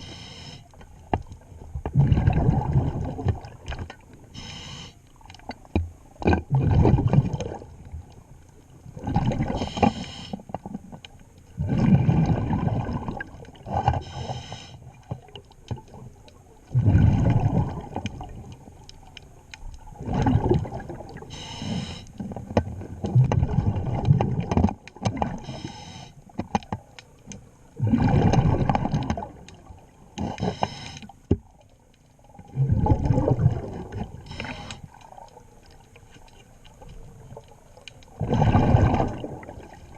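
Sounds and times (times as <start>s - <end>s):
regulator hissing inhale: 0.0s - 0.8s, 4.3s - 5.0s, 9.6s - 10.4s, 14.0s - 14.9s, 21.3s - 22.2s, 25.4s - 26.2s, 30.4s - 31.2s, 34.3s - 35.0s
gurgling exhaust bubbles: 1.8s - 3.7s, 6.2s - 7.7s, 11.6s - 14.0s, 16.7s - 18.5s, 19.9s - 21.2s, 23.0s - 25.4s, 27.8s - 29.4s, 32.5s - 34.3s, 38.1s - 39.9s.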